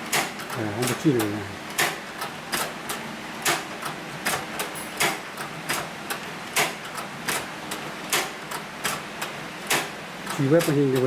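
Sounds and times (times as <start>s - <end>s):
sewing machine clacking: 9.7s - 11.0s.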